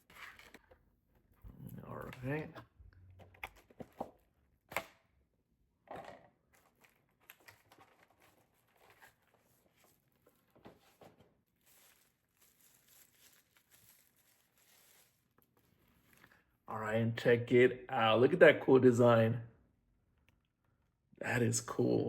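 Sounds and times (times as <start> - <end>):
packaging rustling and crinkling: 6.5 - 16.4.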